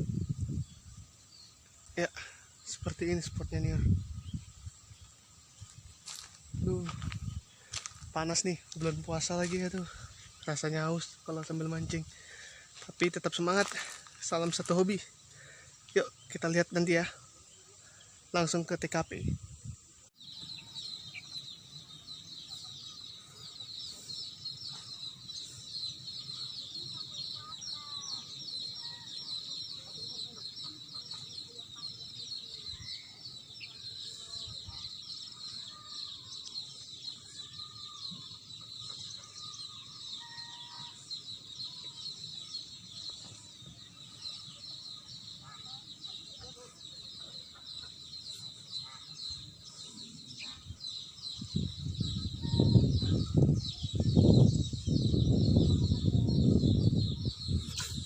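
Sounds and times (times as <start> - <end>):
insects shrilling: 20.3 - 31.9
short bird calls: 20.3 - 34.8, 35.4 - 42.4.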